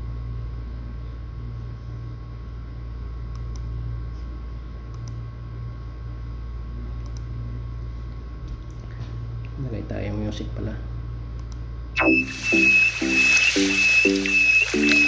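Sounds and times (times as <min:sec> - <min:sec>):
low electrical hum: 0:00.0 - 0:15.0
faint high tone: 0:12.0 - 0:15.0.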